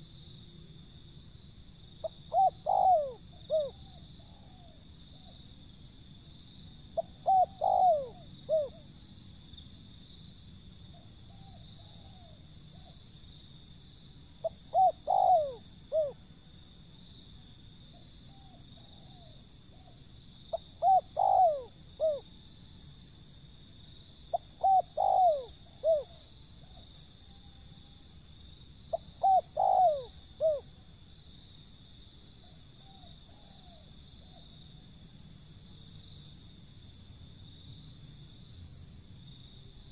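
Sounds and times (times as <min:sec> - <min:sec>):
dove cooing: 0:02.0 - 0:05.4, 0:07.0 - 0:08.9, 0:11.0 - 0:13.0, 0:14.4 - 0:16.2, 0:17.9 - 0:22.3, 0:24.3 - 0:26.9, 0:28.9 - 0:30.7, 0:32.4 - 0:34.4
faint dove coos: 0:02.0 - 0:05.5, 0:06.9 - 0:08.9, 0:10.9 - 0:13.1, 0:14.4 - 0:16.3, 0:17.9 - 0:22.4, 0:24.3 - 0:28.0, 0:28.9 - 0:30.9, 0:32.4 - 0:34.8.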